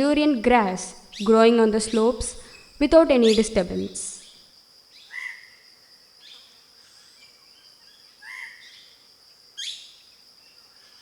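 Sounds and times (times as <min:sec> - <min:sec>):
birds calling: 0:00.0 - 0:04.3.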